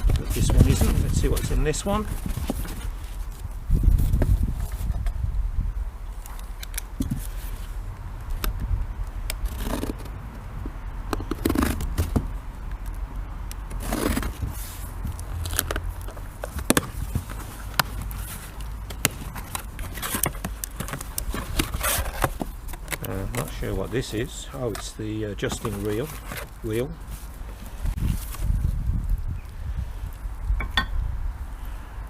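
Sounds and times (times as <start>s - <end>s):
cardboard box being opened: 0.0s - 5.1s, 13.7s - 28.7s.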